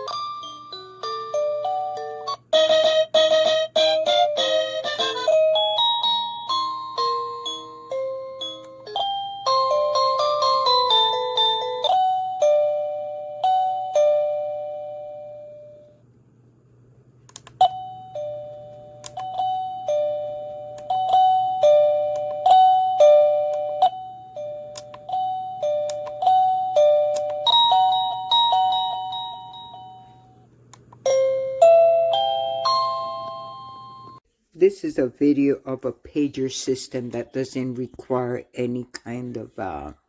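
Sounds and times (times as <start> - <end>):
electronic doorbell chimes: 0.0 - 15.9, 17.6 - 30.4, 31.0 - 34.2.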